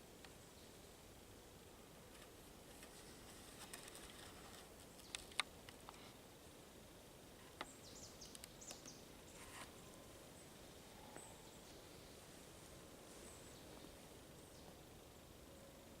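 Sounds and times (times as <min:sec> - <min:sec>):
faint rustle: 0:01.8 - 0:06.6, 0:07.3 - 0:14.8.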